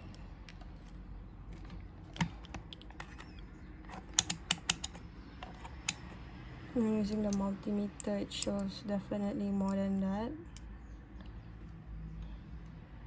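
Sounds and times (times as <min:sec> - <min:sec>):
faint low hum: 0:00.0 - 0:13.0
sharp clicks: 0:02.1 - 0:06.1.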